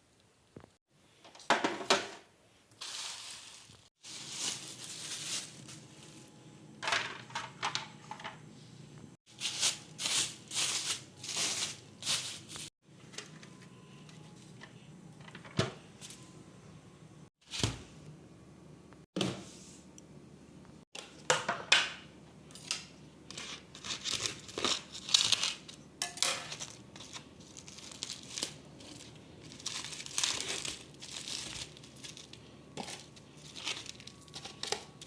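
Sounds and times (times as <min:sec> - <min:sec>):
kitchen items rustling and clattering: 0:00.6 - 0:08.5, 0:09.3 - 0:16.2, 0:23.3 - 0:35.0.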